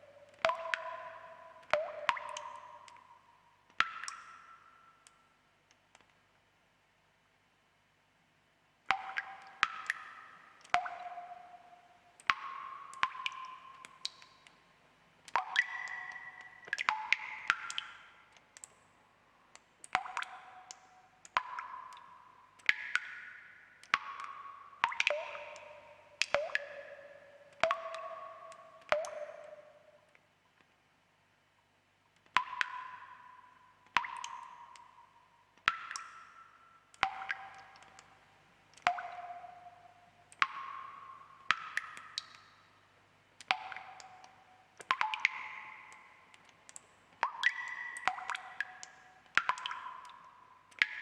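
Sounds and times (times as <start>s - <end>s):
water drops dripping: 0.0s - 6.4s, 8.8s - 30.8s, 31.4s - 51.0s.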